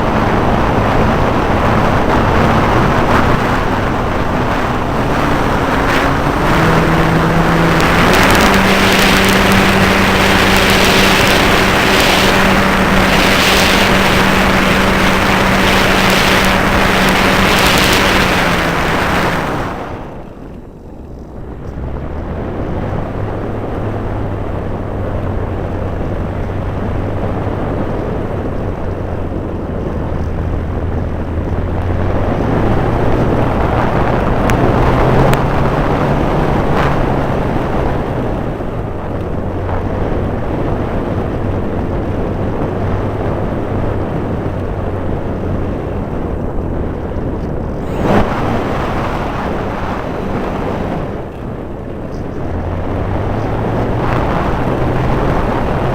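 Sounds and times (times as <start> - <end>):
loud rushing sound: 0.0 - 20.4, 47.6 - 51.9
model airplane motor droning: 0.0 - 20.6, 47.7 - 55.9.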